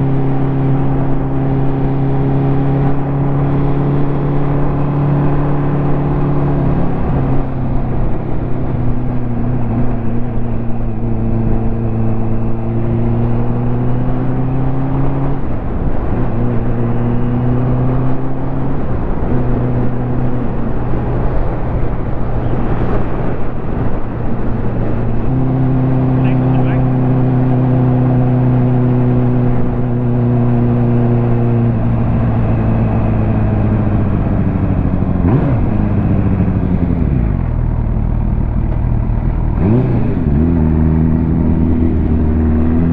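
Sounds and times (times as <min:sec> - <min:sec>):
wind and road noise: 0:00.0 - 0:42.9
motorcycle engine running: 0:29.9 - 0:42.9.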